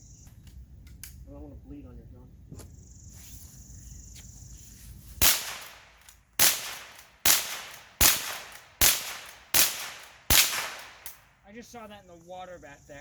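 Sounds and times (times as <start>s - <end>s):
gunshots with echo: 5.2s - 11.2s.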